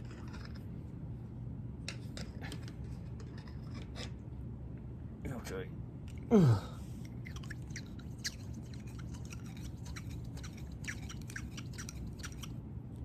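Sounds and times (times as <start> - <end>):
small clicks and rubbing scrapes: 0.0 - 0.7, 1.9 - 4.2, 7.0 - 12.6
steady low hum: 0.0 - 13.0.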